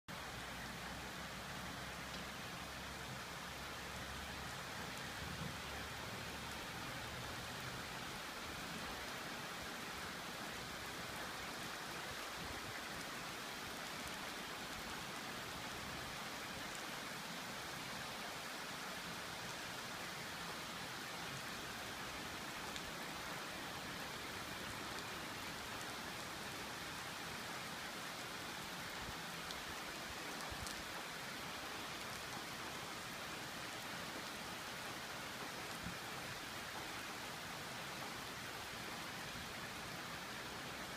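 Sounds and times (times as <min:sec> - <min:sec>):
rain falling: 0:00.1 - 0:40.9
raindrop ticks: 0:16.6 - 0:16.9, 0:29.4 - 0:31.0.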